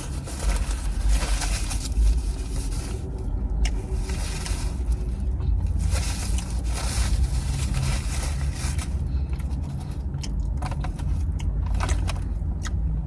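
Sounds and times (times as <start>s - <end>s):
rustling: 0.0s - 10.0s
steady low rumble: 0.0s - 13.0s
chewing: 9.4s - 12.9s.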